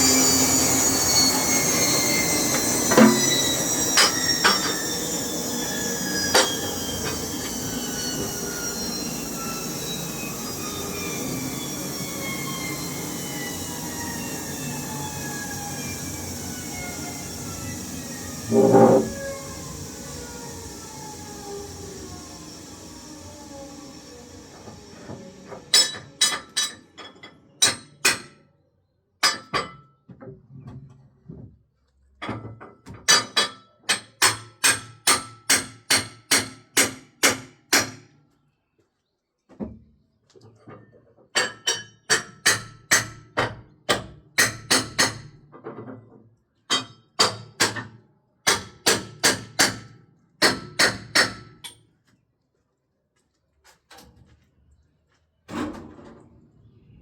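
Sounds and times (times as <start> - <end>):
falling whine: 0.0 - 24.8
ringing hammer blows: 2.0 - 4.9, 18.5 - 19.3.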